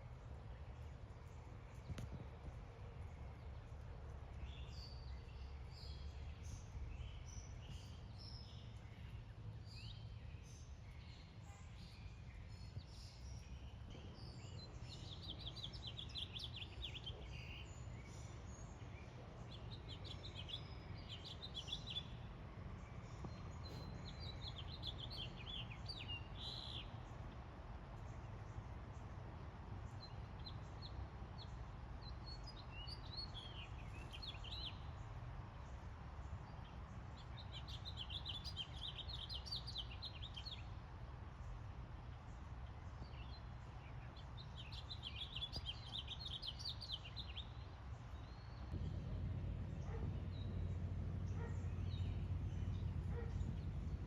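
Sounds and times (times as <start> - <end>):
small birds chirping: 0.0 - 54.0
low background rumble: 46.8 - 54.0.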